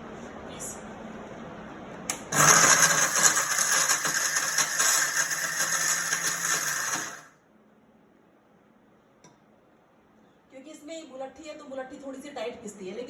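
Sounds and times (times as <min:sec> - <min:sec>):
mixer grinder motor running: 0:02.2 - 0:07.3.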